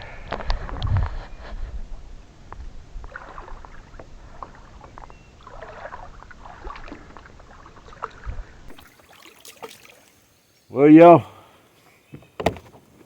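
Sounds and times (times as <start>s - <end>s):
water splashing against a kayak: 2.5s - 10.2s, 12.1s - 13.0s
knocks and clicks on hull: 12.1s - 13.0s.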